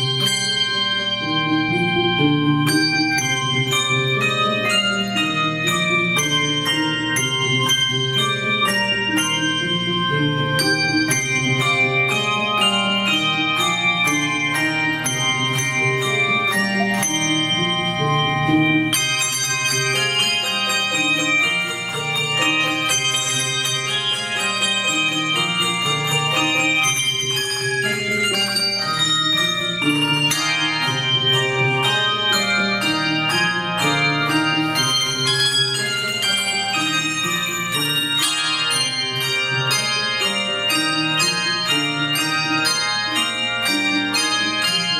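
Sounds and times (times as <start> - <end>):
handbell choir playing chords: 0.0 - 44.9.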